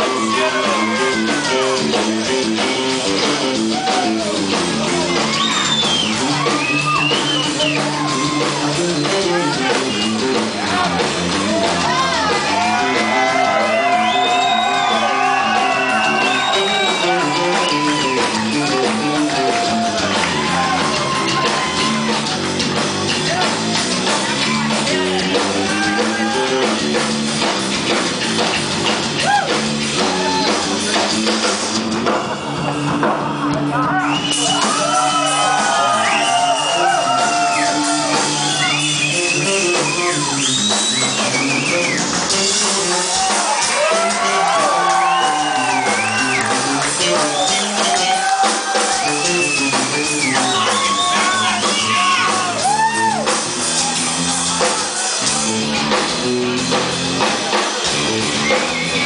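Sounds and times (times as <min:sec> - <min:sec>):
people shouting: 0:00.0 - 0:01.8, 0:03.5 - 0:08.7, 0:10.6 - 0:22.4, 0:24.2 - 0:26.6, 0:33.8 - 0:39.0, 0:42.9 - 0:55.2
electric guitar bending notes: 0:00.0 - 0:29.2
rock band playing loudly: 0:00.0 - 0:59.0.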